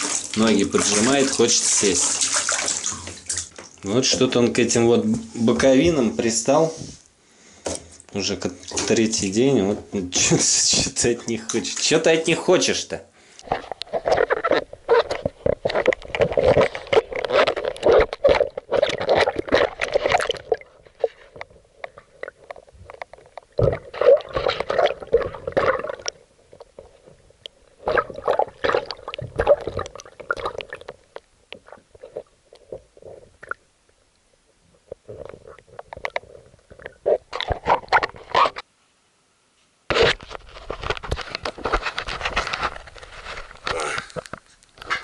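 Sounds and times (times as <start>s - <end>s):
muffled water sloshing and splashing: 0.0s - 4.2s, 13.5s - 33.6s.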